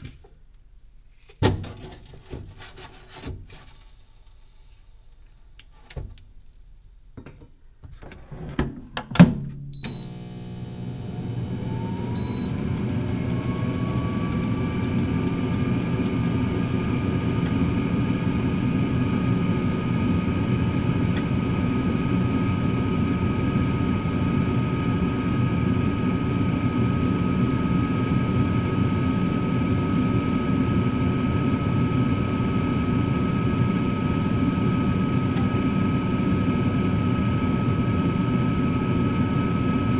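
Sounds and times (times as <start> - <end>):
fan whine and hum: 7.1 - 39.9
control panel beep: 9.5 - 10.3, 12.0 - 15.0.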